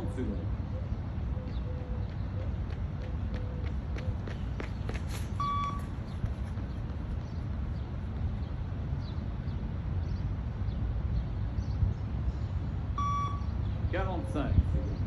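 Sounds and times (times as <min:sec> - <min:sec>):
faint footfalls: 0:01.5 - 0:08.5
short electronic beep: 0:05.4 - 0:05.8, 0:13.0 - 0:13.5.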